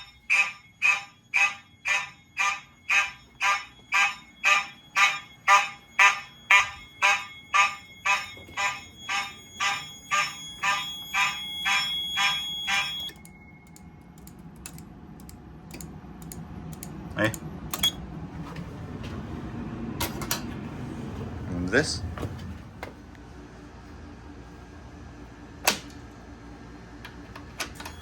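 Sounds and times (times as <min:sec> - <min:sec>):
fire alarm horn blasts: 0:00.0 - 0:13.8.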